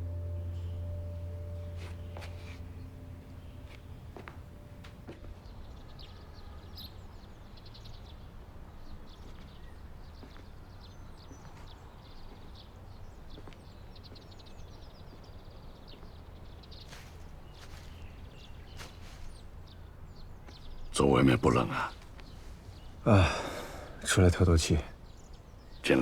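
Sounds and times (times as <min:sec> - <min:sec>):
low rumble: 0:00.0 - 0:05.1.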